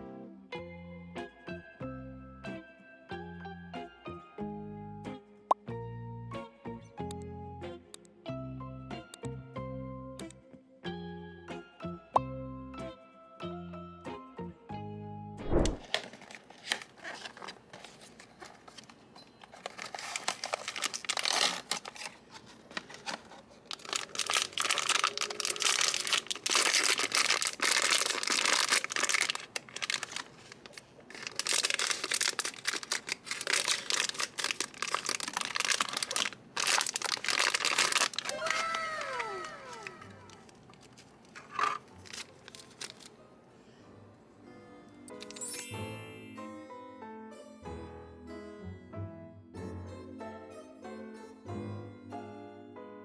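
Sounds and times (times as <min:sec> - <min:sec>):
packaging crinkling and tearing: 0:15.8 - 0:43.1.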